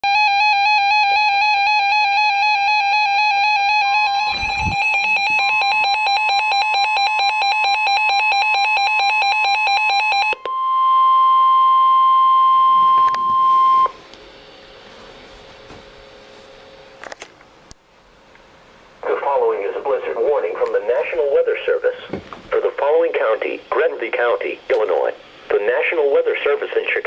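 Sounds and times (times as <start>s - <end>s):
warbling alarm tone: 0.0s - 14.0s
steady single-pitch attention tone: 2.7s - 14.0s.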